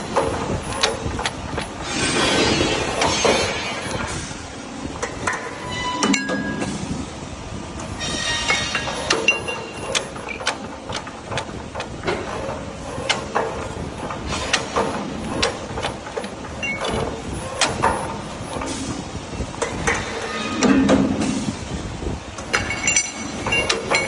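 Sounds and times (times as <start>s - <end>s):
metallic clicks and clanks: 7.8s - 21.5s, 22.4s - 24.0s.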